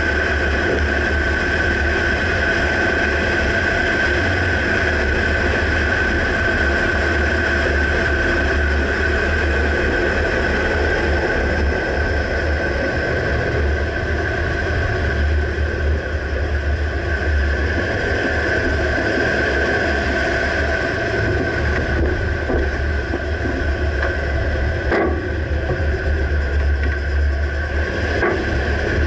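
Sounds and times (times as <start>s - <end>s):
truck low rumble: 0.0s - 29.0s
suspension clunks: 21.2s - 27.3s, 28.1s - 29.0s.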